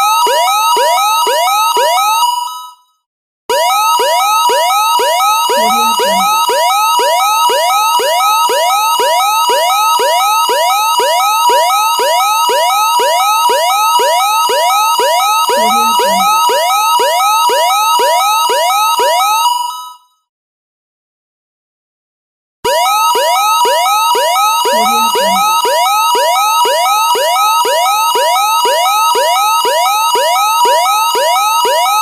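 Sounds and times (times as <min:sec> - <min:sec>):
electronic alarm rising chirps: 0:05.2 - 0:06.5, 0:15.4 - 0:16.6, 0:24.6 - 0:25.8
pulsing two-note beep: 0:05.5 - 0:06.4, 0:15.5 - 0:16.4, 0:24.7 - 0:25.6.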